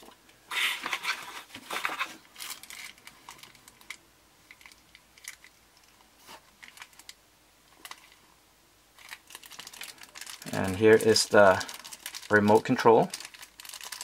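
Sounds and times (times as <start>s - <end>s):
packaging crinkling and rustling: 0.0s - 8.2s, 9.0s - 14.0s.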